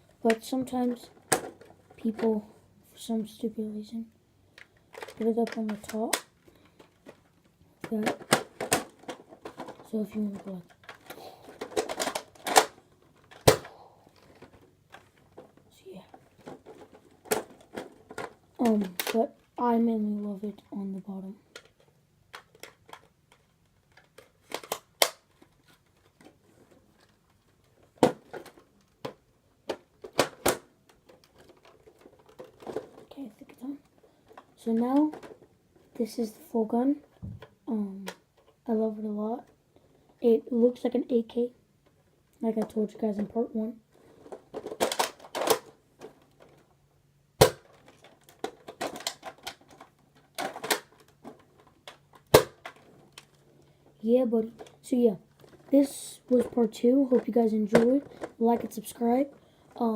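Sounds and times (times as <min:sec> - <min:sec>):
plastic toy parts clicking: 0:01.1 - 0:02.3, 0:04.6 - 0:15.5, 0:16.1 - 0:19.4, 0:21.5 - 0:26.4, 0:27.0 - 0:33.1, 0:33.9 - 0:36.0, 0:44.0 - 0:46.7, 0:47.4 - 0:53.7, 0:54.4 - 0:59.8.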